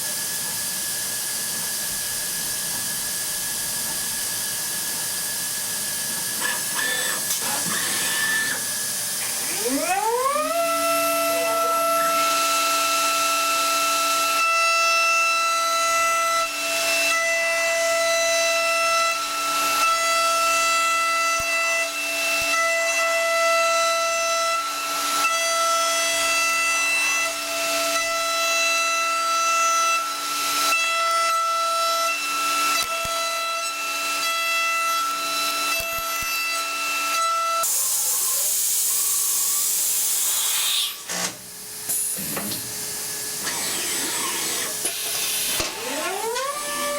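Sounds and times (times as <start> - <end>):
milling machine high-pitched whine: 0.0 - 20.0, 34.1 - 46.9
hiss: 37.6 - 41.1.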